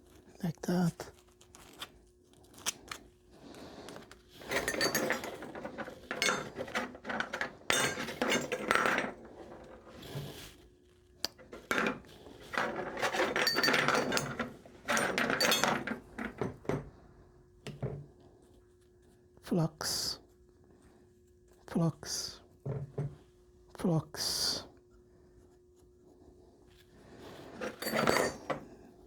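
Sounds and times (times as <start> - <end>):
small metallic clinks: 4.5 - 9.1, 13.0 - 16.8, 27.6 - 28.8.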